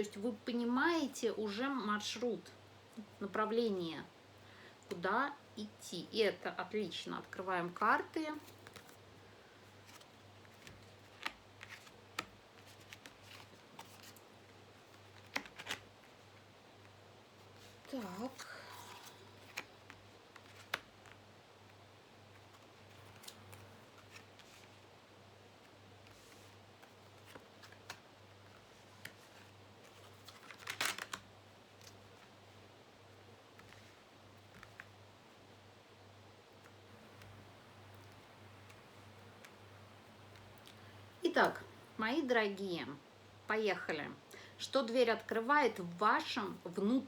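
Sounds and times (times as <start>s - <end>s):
faint low hum: 0.0s - 47.0s
card snaps and rustle: 8.4s - 9.0s, 9.8s - 18.1s, 18.8s - 24.9s, 25.6s - 32.4s
cards flicking and tapping: 9.9s - 14.3s, 14.9s - 16.0s, 19.0s - 21.3s, 29.9s - 32.0s.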